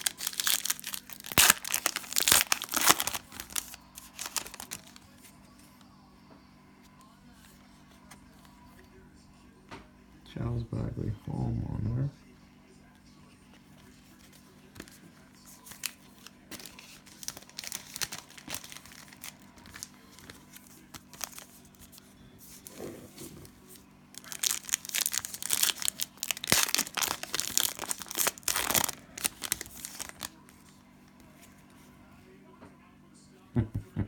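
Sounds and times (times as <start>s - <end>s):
cellophane wrapper crinkling: 0.0s - 5.0s, 15.5s - 30.5s
wrapper tearing: 0.0s - 5.0s, 15.6s - 22.8s, 24.1s - 30.4s.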